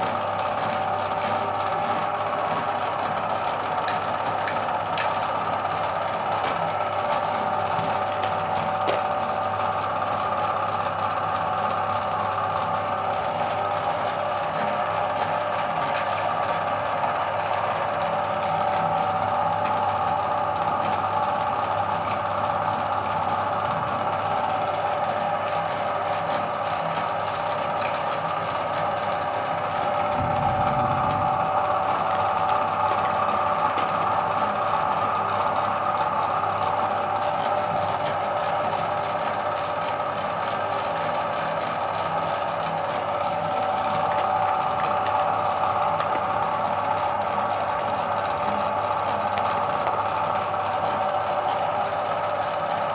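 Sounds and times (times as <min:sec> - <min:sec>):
meat grinder whirring: 0:00.0 - 0:52.9.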